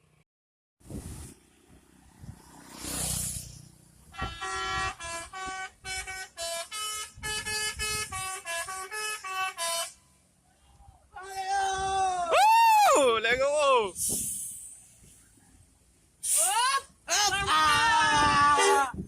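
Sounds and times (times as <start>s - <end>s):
short rush of noise: 0.8s - 4.0s, 14.0s - 15.4s
air horn playing jingle: 4.1s - 10.0s.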